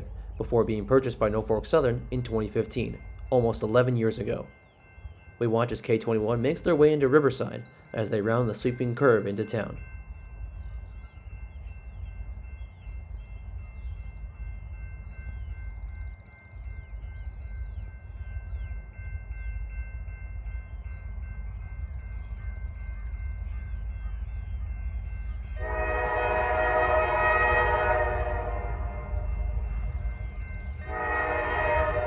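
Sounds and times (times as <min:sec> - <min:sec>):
diesel locomotive rumble: 0:00.0 - 0:32.0
locomotive air horn: 0:25.6 - 0:29.5, 0:30.8 - 0:32.0.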